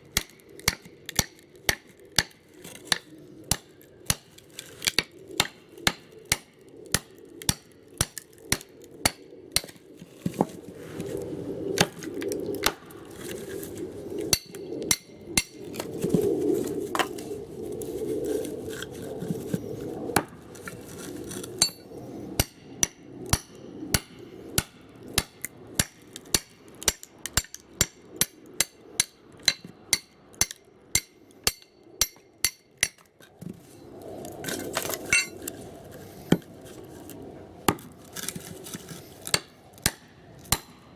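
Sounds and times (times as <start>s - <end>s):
low rumbling noise: 0.0s - 30.9s.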